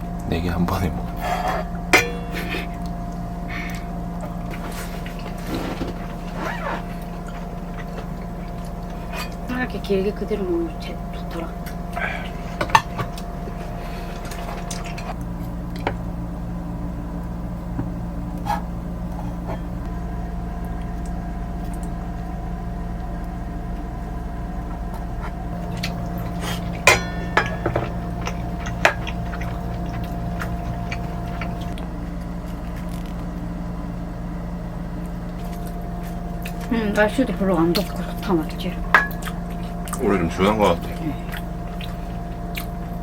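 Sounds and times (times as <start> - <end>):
machine hum: 0.0 - 43.0
dishes and cutlery clinking: 26.4 - 29.6, 38.9 - 39.3.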